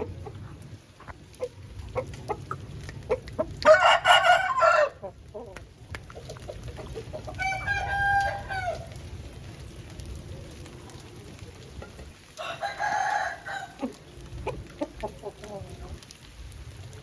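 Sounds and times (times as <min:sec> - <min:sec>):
roosters crowing: 0:03.6 - 0:05.1, 0:07.3 - 0:09.0, 0:12.4 - 0:14.0.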